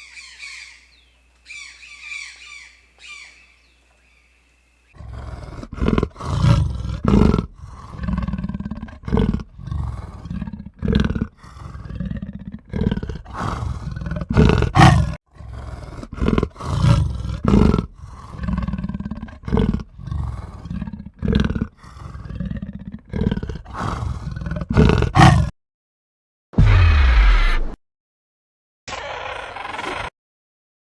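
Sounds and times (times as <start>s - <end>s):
large animal roaring: 5.0s - 25.5s.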